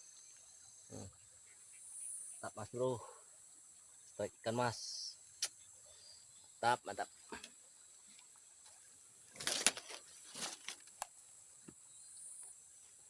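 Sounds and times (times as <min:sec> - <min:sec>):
crickets chirring: 0:00.0 - 0:13.0
rustling handling noises: 0:09.4 - 0:11.1.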